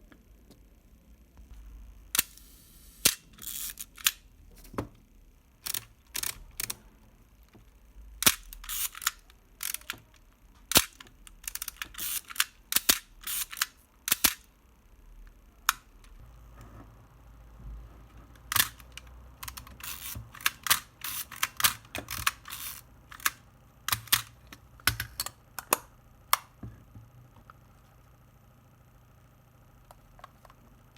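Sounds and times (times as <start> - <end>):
film advance lever ratcheting: 5.6 - 6.8, 8.2 - 10.0, 10.7 - 14.4, 18.5 - 24.3
camera shutter clicks: 8.2 - 9.9.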